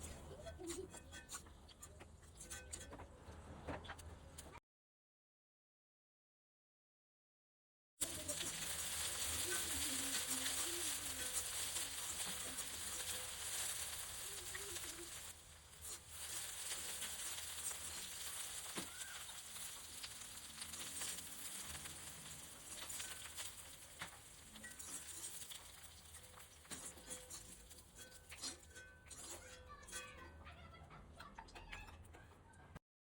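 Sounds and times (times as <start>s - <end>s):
okra sizzling in hot oil: 0.0s - 1.8s, 8.0s - 30.2s.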